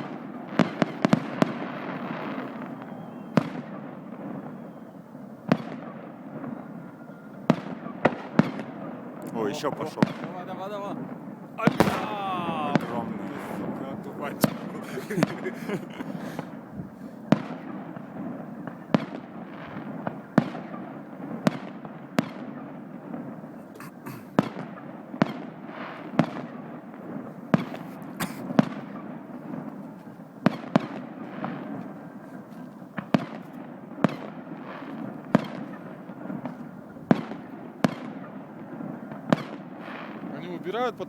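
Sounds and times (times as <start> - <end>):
firework shells bursting: 9.4 - 17.6.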